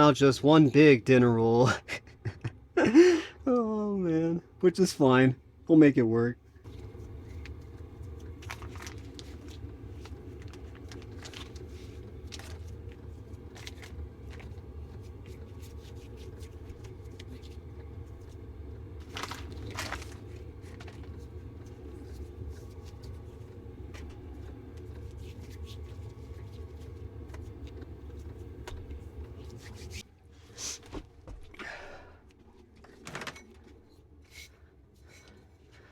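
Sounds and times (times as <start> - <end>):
steady low hum: 0.0 - 35.9
scrapes crinkles and light clicks: 6.6 - 18.4, 19.0 - 30.0.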